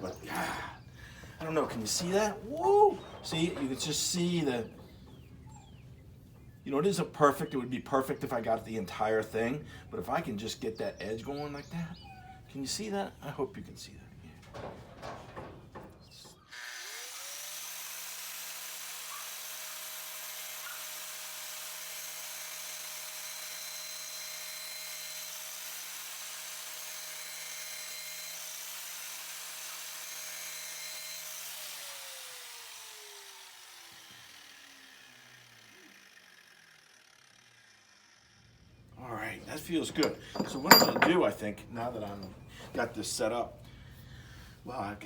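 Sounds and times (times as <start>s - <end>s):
electric grinder motor whining: 16.5s - 38.5s.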